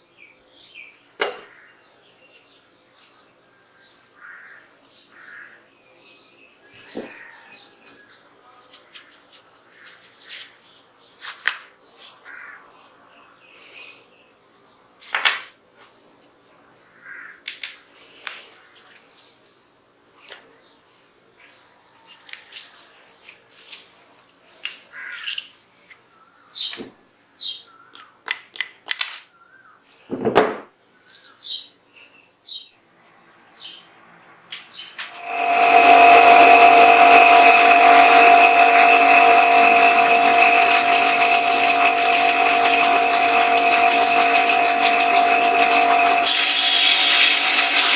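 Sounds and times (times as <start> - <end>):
brief metal scrapes: 35.1 - 47.9.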